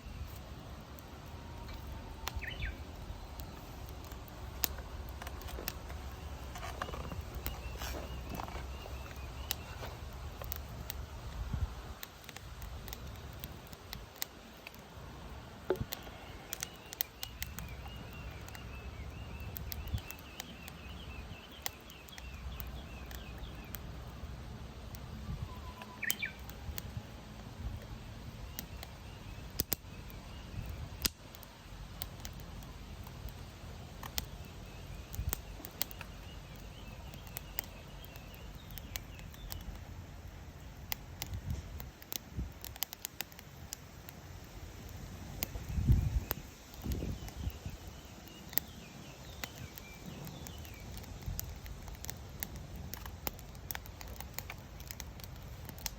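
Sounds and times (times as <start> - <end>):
birds chirping: 0.0 - 11.0, 15.7 - 24.2, 24.9 - 26.6, 32.0 - 39.8, 45.4 - 55.9
low rumble of fire draft: 0.0 - 55.9
wood fire crackling and popping: 0.0 - 55.9.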